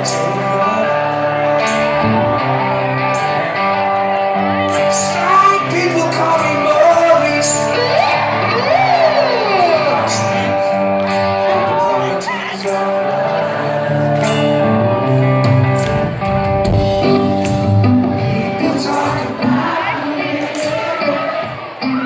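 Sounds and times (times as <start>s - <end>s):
live rock band playing: 0.0s - 22.0s.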